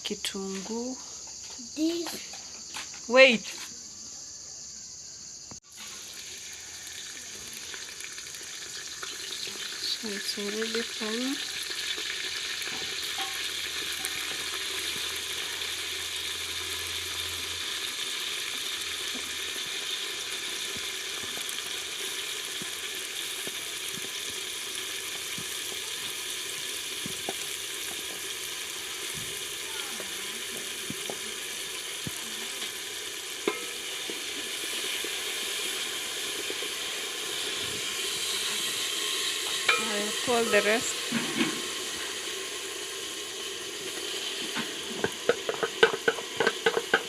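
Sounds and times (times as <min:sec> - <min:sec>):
onions sizzling in oil: 0:05.6 - 0:47.0.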